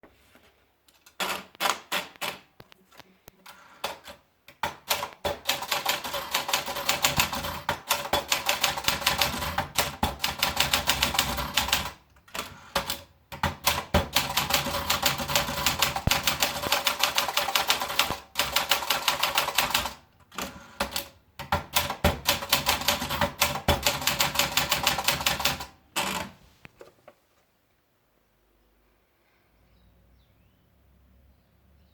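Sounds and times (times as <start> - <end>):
typewriter keys clacking: 0.9 - 2.5, 3.7 - 26.3.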